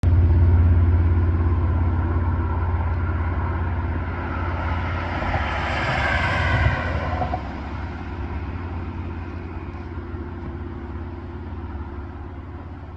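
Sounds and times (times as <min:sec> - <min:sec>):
engine low rumble: 0:00.0 - 0:12.9
rushing noise: 0:01.2 - 0:09.2.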